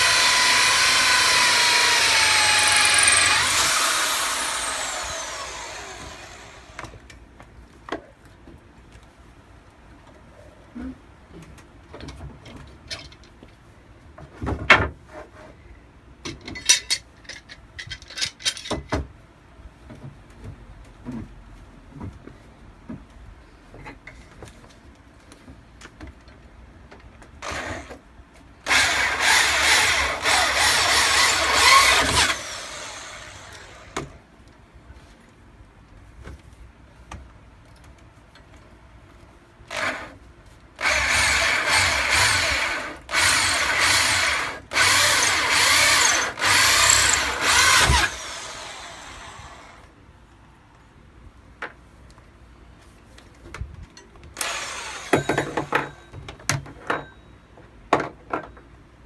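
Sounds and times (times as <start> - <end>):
power drill running in bursts: 0.0 - 6.9, 28.7 - 34.0, 40.8 - 49.8, 54.4 - 55.6.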